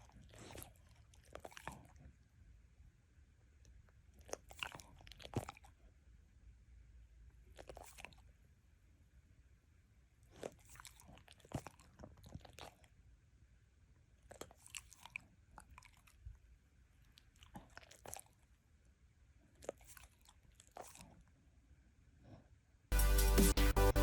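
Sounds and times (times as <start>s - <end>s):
dog licking lips: 0.0s - 2.1s, 4.1s - 5.8s, 7.5s - 8.3s, 10.3s - 12.9s, 14.2s - 16.3s, 17.0s - 18.5s, 19.6s - 21.3s.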